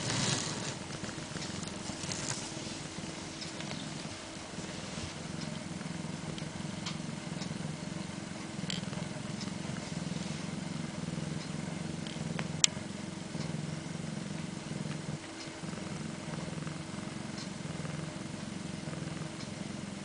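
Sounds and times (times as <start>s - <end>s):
cat purring: 0.0s - 20.0s.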